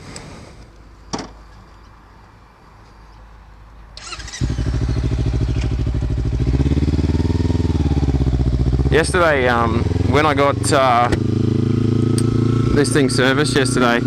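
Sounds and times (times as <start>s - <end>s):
motorcycle engine starting and running: 4.0s - 14.0s.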